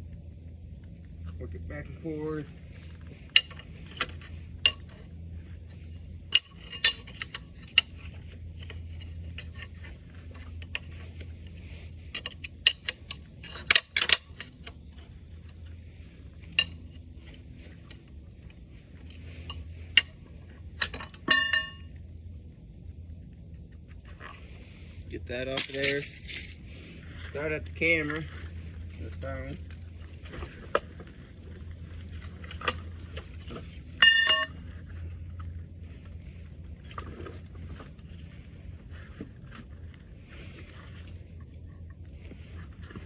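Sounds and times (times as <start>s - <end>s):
steady low hum: 0.0s - 43.0s
ringing metal clang: 21.3s - 21.8s, 34.0s - 34.6s
steel tools clinking on metal: 21.3s - 21.8s, 34.0s - 34.6s.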